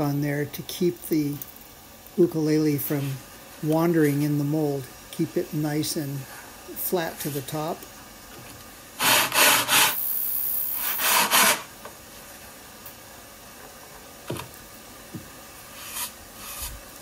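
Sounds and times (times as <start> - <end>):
wood scraping on sandpaper: 9.0 - 10.0, 10.8 - 11.7, 15.7 - 16.8.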